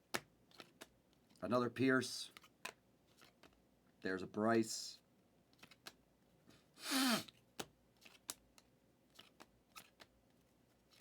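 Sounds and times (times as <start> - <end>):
trading cards flipping and sliding: 0.5 - 0.9, 2.3 - 3.6, 5.6 - 6.0, 8.0 - 11.0.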